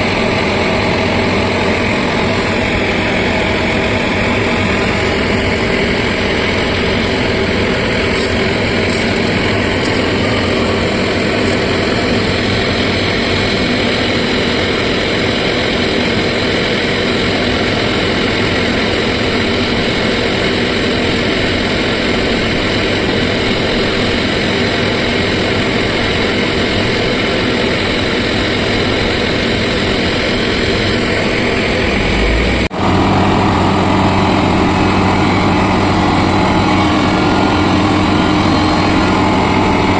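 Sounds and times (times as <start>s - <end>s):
heavy machinery diesel engines: 0.0s - 39.9s.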